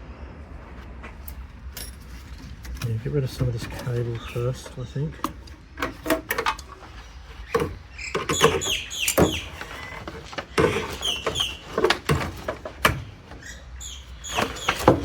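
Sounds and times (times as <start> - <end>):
metal clunks and clatters: 1.0 - 13.6, 14.2 - 15.0
short high squeaks: 7.5 - 15.0.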